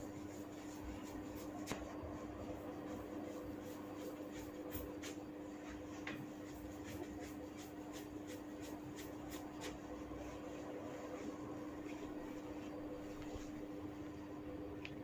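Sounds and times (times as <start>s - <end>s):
steady low hum: 0.0s - 15.0s
hair crackling: 2.7s - 13.6s.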